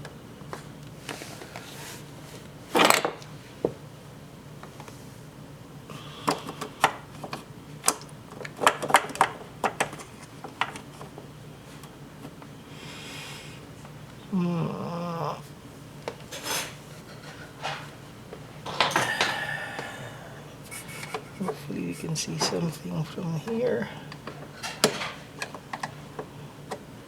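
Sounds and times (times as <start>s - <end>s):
parts and tools clattering: 18.6s - 19.5s, 23.5s - 26.3s
rubbing noise: 20.7s - 21.5s.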